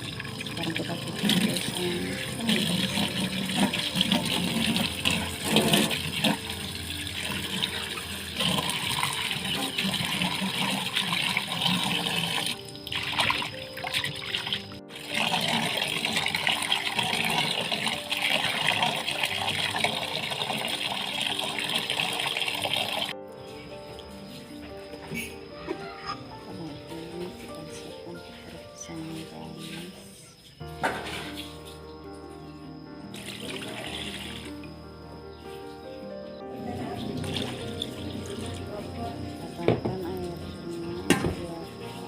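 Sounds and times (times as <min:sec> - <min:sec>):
running water splashing: 0:00.0 - 0:23.2, 0:33.0 - 0:35.0, 0:36.5 - 0:42.0.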